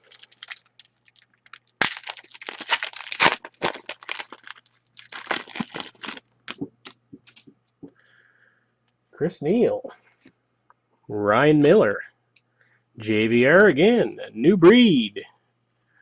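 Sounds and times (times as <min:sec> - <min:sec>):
wrapper tearing and crinkling: 0:00.0 - 0:07.4.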